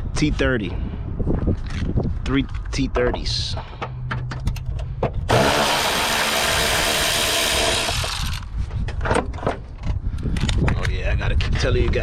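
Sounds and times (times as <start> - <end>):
power driver spinning: 5.3 - 8.5.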